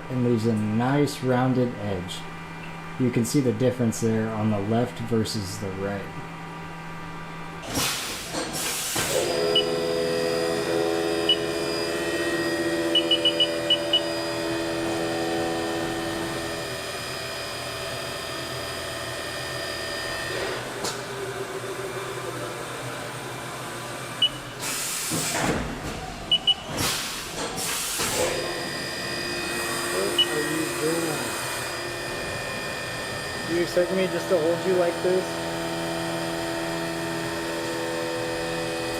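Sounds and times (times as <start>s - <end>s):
milling machine spindle whine: 9.1s - 25.0s, 28.3s - 38.9s.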